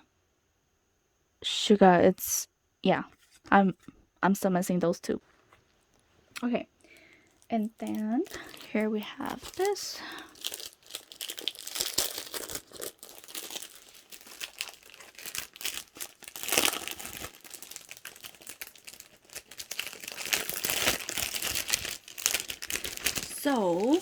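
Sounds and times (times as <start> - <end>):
packaging crinkling and rustling: 6.8 - 24.0.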